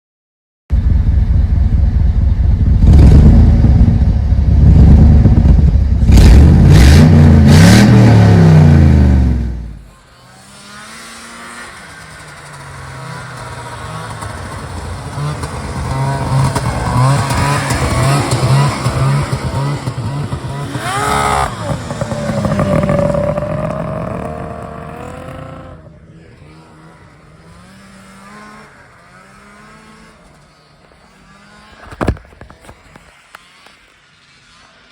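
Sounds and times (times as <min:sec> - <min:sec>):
quieter engine rising and falling: 0:00.7 - 0:32.6
engine revving hard: 0:04.7 - 0:31.8.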